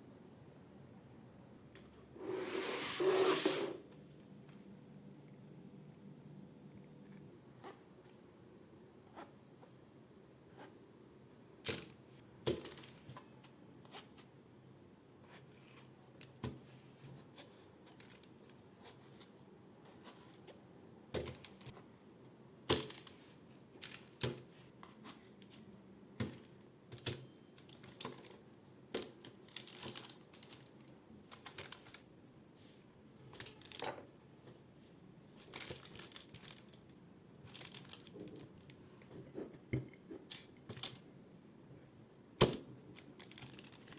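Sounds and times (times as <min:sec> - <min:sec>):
rustling and crinkling: 0:29.0 - 0:41.1, 0:42.6 - 0:43.9.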